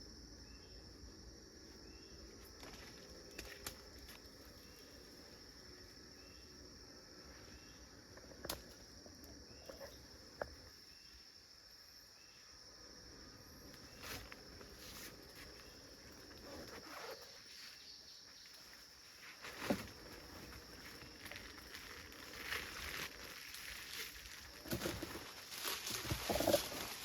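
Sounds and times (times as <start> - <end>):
rustling: 18.5 - 27.0.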